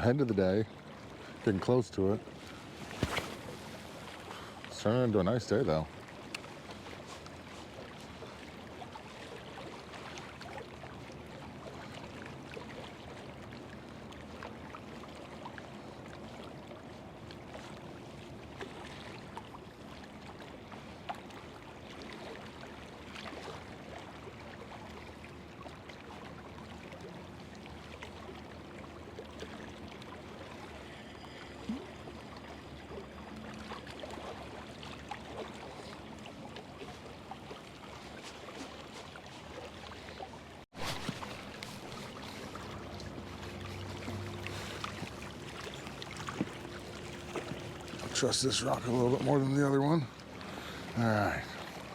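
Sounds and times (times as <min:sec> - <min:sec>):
river water washing against rocks: 0:01.6 - 0:08.4, 0:34.0 - 0:51.9
faint low hum: 0:40.2 - 0:51.9.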